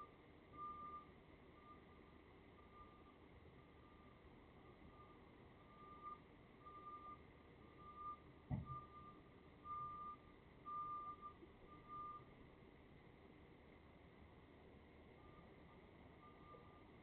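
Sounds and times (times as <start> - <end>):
truck reversing alarm beeping: 0.0 - 12.3, 15.1 - 17.0
low thud: 8.5 - 8.8.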